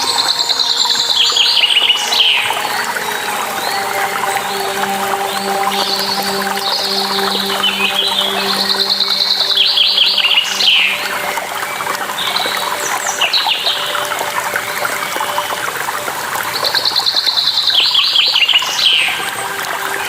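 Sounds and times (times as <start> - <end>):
running water rushing: 0.0 - 20.0.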